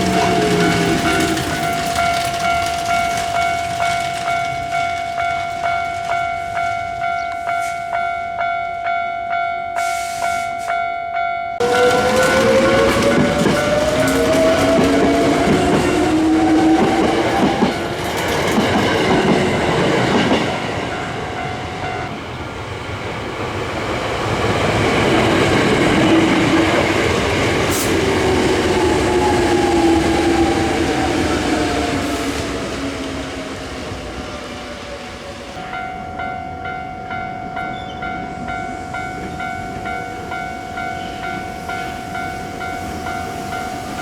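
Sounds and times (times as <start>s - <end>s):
electric train motor whine: 0.0s - 6.3s, 11.6s - 18.2s
wheels clattering on rails: 0.0s - 10.9s, 11.5s - 44.0s.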